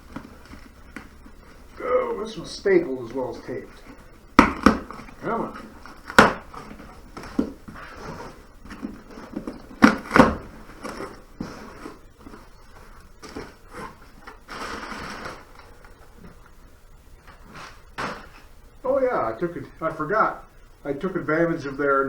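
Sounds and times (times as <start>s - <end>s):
cardboard scraping and rustling: 0.0s - 16.4s, 17.2s - 18.5s
sharp knocks: 4.4s - 5.1s
cardboard tearing: 4.4s - 12.4s, 13.1s - 15.8s.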